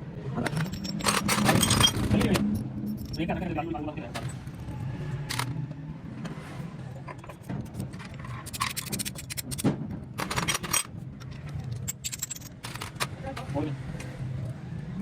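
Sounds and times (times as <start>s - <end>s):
metal tools clinking and scraping: 0.4s - 3.4s, 6.9s - 13.2s.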